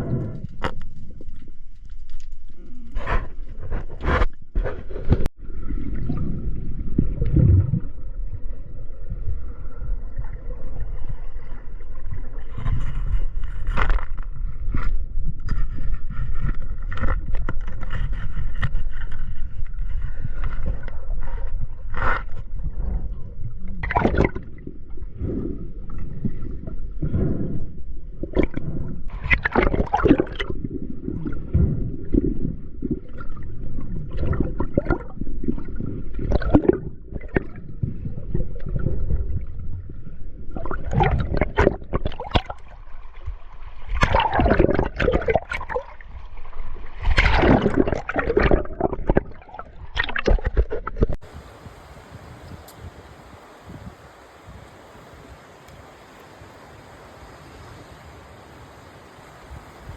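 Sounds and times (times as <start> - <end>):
underwater rumble and gurgling: 0.0 - 51.5
underwater clicks and knocks: 12.5 - 24.6, 28.2 - 39.6, 40.5 - 43.3, 43.9 - 45.9, 47.0 - 51.2.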